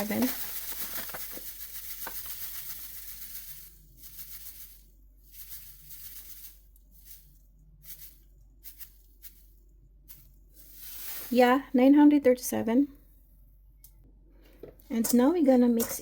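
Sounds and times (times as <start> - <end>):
sugar trickling into a bowl: 0.0 - 9.4, 10.5 - 11.6.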